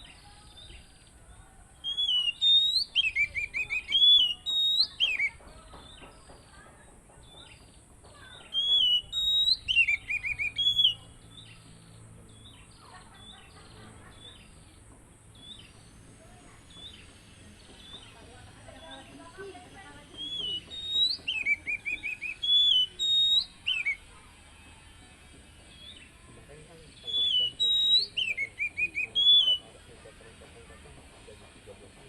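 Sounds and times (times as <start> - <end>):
bird singing whistled phrases: 1.8 - 6.0, 8.4 - 11.6, 20.1 - 24.1, 26.9 - 29.7.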